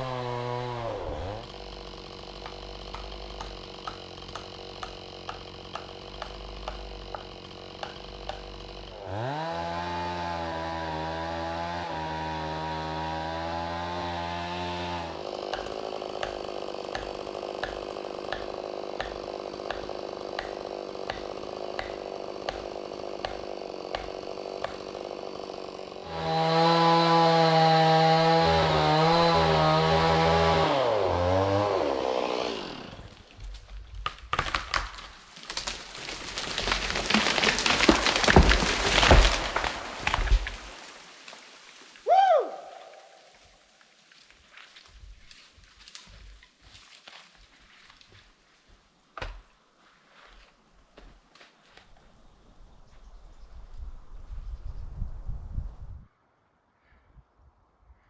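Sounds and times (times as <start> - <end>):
chainsaw cutting wood: 0.0 - 42.1.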